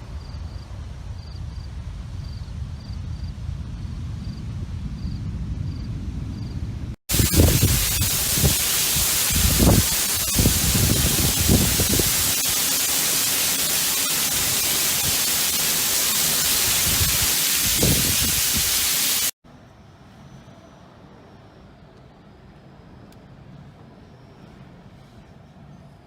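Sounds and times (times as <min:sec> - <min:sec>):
wind and driving rain: 0:07.1 - 0:19.4.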